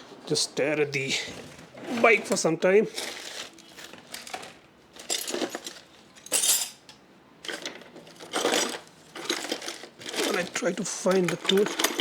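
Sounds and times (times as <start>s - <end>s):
metal hand tools clinking: 6.3s - 6.8s.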